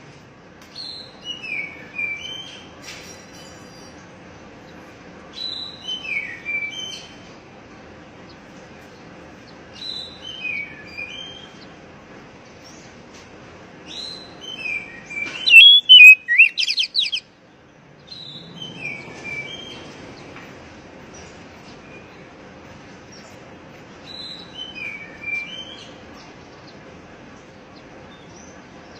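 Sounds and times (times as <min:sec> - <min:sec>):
songbird singing whistled phrases: 0:13.9 - 0:17.2.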